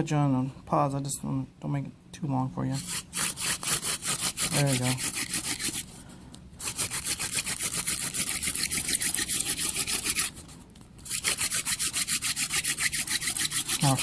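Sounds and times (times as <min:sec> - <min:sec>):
wood rasping on wood: 0:02.8 - 0:05.8, 0:06.6 - 0:10.4, 0:11.0 - 0:14.0.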